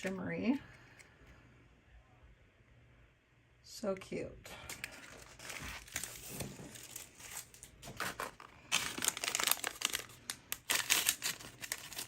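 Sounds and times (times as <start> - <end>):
plastic wrapper crinkling and tearing: 4.7 - 12.0.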